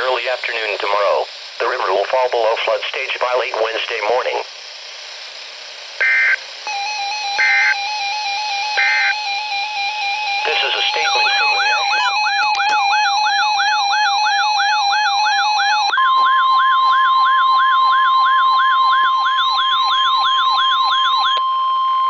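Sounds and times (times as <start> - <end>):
steady warning alarm tone: 6.0 - 22.0
stepped beeping alarm tone: 6.0 - 22.0
rising and falling siren whoop: 11.6 - 21.4.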